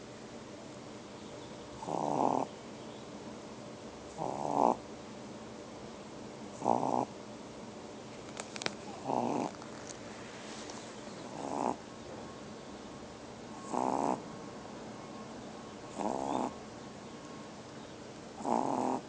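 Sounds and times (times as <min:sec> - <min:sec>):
pet snoring: 0:01.8 - 0:02.5, 0:04.1 - 0:04.8, 0:06.6 - 0:07.1, 0:08.9 - 0:09.6, 0:11.2 - 0:11.8, 0:13.6 - 0:14.2, 0:15.9 - 0:16.6, 0:18.4 - 0:19.0.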